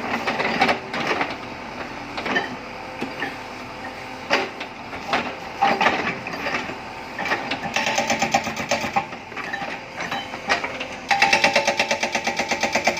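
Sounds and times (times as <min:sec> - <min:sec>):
hydraulic rock breaker hammering: 0:07.2 - 0:12.9.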